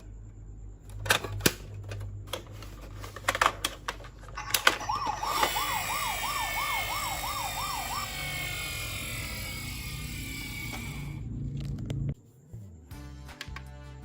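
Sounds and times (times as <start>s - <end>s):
toy electronic siren wailing: 4.4s - 11.2s.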